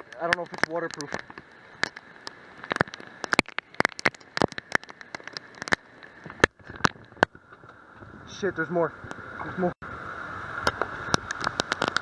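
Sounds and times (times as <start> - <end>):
raindrops tapping on microphone: 0.0 - 8.1, 10.6 - 12.0
rain hiss: 0.0 - 12.0.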